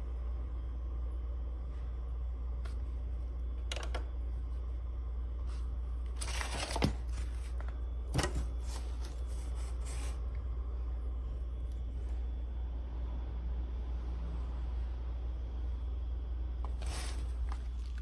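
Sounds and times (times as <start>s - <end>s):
steady low hum: 0.0s - 18.0s
rustling and scraping handling noise: 5.4s - 10.4s, 16.6s - 18.0s.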